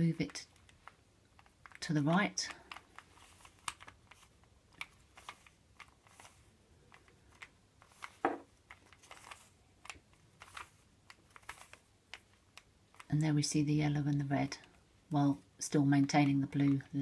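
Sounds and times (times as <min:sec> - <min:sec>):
puzzle cube layers clicking: 0:00.2 - 0:14.8.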